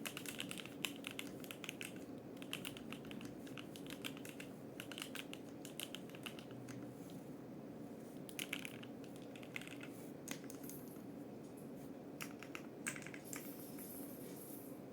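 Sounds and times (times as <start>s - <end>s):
mechanical keyboard typing: 0.0s - 6.9s, 8.3s - 10.9s, 12.2s - 13.6s.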